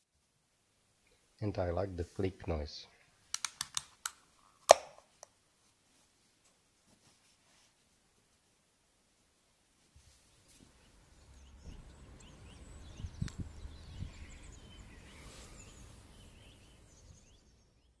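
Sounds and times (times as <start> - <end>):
birds chirping: 10.3 - 18.0
low background rumble: 11.1 - 17.0.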